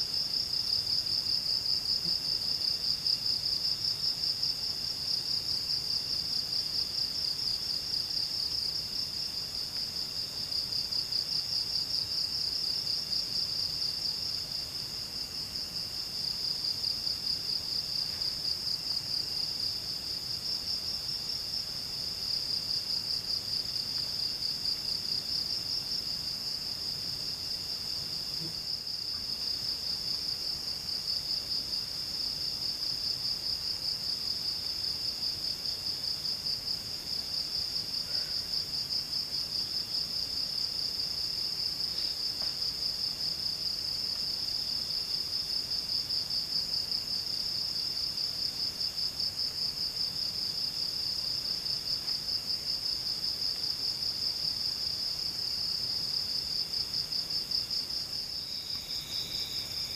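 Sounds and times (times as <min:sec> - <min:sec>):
faint low insect trill: 0:00.0 - 0:59.9
crickets trilling: 0:50.6 - 0:59.9.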